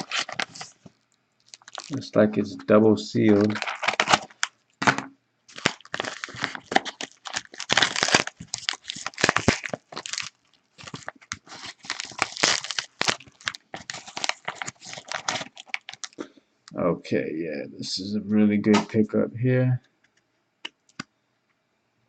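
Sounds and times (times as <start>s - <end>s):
packaging tearing and crinkling: 0.0s - 2.1s, 3.2s - 16.2s.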